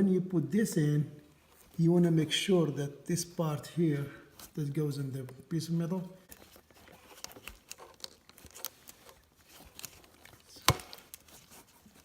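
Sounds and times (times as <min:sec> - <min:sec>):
small clicks and rubbing: 0:06.2 - 0:12.0.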